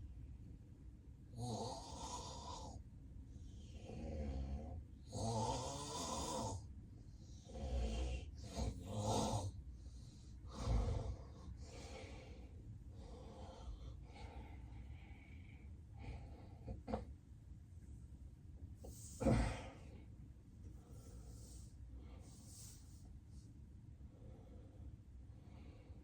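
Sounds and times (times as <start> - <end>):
man snoring heavily: 1.4 - 2.8, 3.8 - 6.6, 7.4 - 9.5, 10.5 - 12.0.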